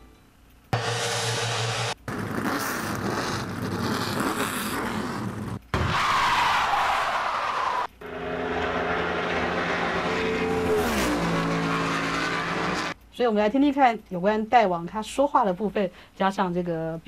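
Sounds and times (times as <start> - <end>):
steady engine tone: 0.8 - 5.7, 7.4 - 13.0
tire screech: 2.1 - 13.0
rushing vehicle noise: 7.9 - 13.0.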